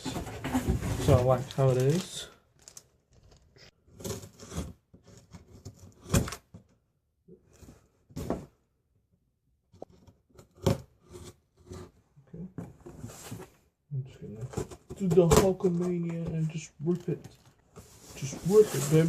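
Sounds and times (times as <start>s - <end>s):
boxes knocking and thudding: 0.0s - 1.7s, 8.1s - 8.6s, 14.4s - 16.6s
packaging rustling: 0.9s - 3.7s.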